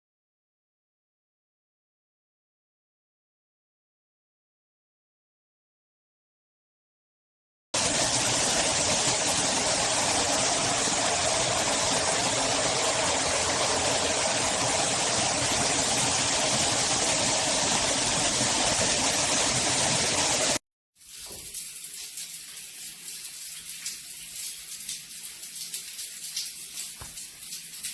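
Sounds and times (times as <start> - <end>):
shower water rushing: 7.8 - 27.9.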